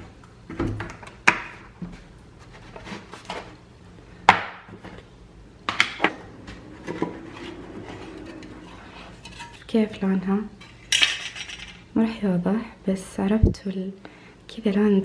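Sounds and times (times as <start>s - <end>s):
kitchenware knocking and clanking: 10.6s - 11.9s.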